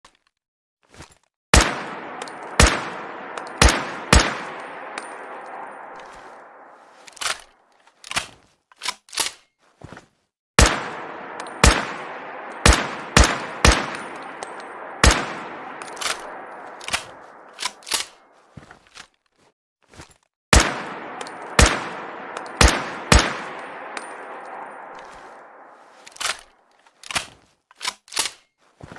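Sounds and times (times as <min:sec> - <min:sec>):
echoing rifle shots: 0:01.5 - 0:07.5, 0:10.6 - 0:18.4, 0:20.6 - 0:26.6.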